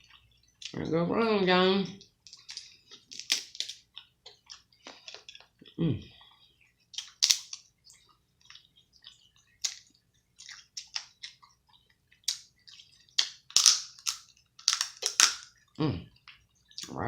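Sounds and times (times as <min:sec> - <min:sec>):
wet chewing and lip smacks: 0:00.0 - 0:00.8, 0:02.0 - 0:17.0.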